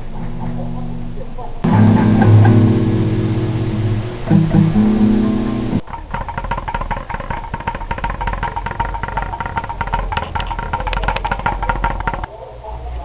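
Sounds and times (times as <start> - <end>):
guitar music: 1.7 - 5.8
machine clicking and whining: 1.7 - 12.3.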